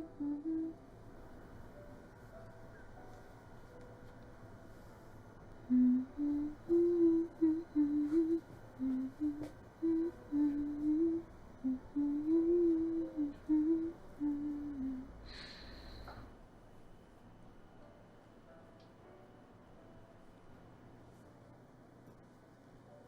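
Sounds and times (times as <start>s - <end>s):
person humming: 0.0s - 0.8s, 5.6s - 15.8s.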